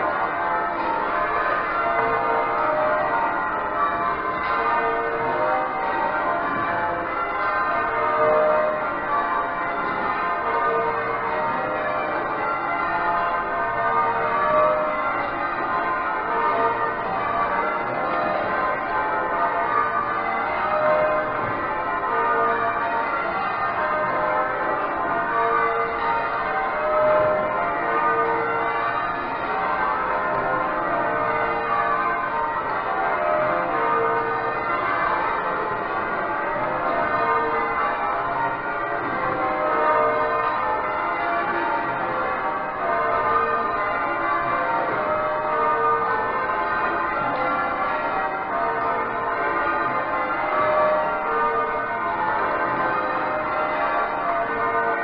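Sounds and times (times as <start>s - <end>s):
church bells change ringing: 0.0s - 55.0s.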